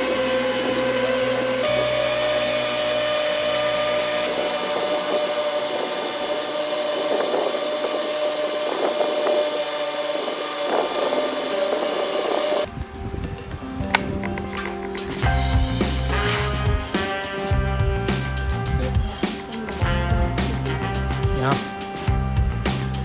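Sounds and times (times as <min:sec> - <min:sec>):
power tool motor whining: 0:00.0 - 0:12.7
tool rasping wood: 0:00.0 - 0:12.7.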